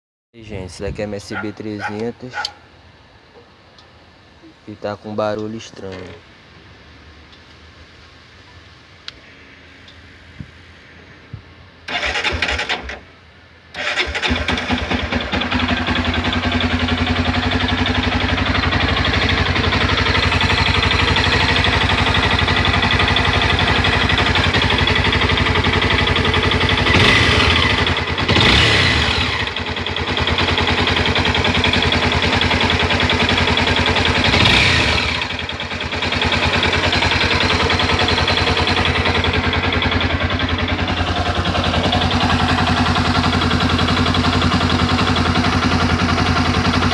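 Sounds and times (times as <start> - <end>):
person talking: 0.4 - 2.5, 4.4 - 6.2
motorbike engine idling and revving: 11.9 - 13.0, 13.8 - 46.9
engine starter cranking: 11.9 - 13.1, 13.7 - 46.9.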